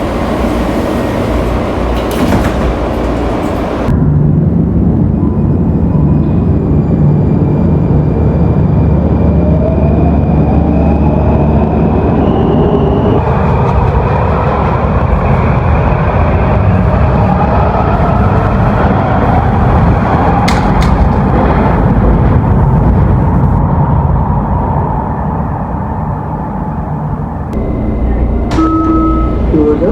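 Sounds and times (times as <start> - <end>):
train rumbling: 0.0 - 29.9
train motor whine rising: 27.5 - 29.9.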